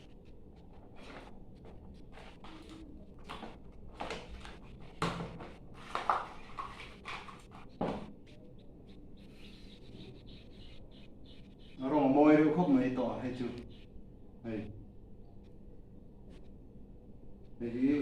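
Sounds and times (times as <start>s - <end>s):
packaging rustling and clicking: 5.3s - 7.8s.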